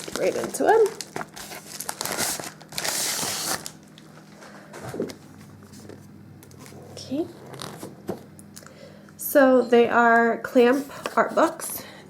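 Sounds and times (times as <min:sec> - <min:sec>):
packaging rustling and tearing: 0:00.0 - 0:04.2, 0:07.5 - 0:07.9.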